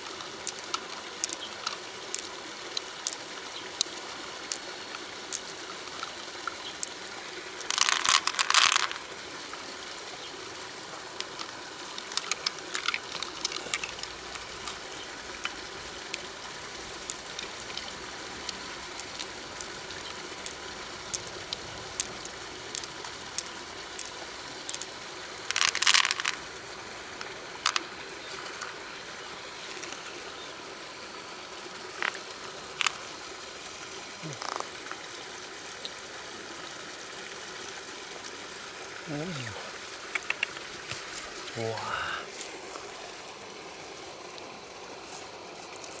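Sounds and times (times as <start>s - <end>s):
river water running: 0.0s - 46.0s
sharp clicks: 40.0s - 41.2s.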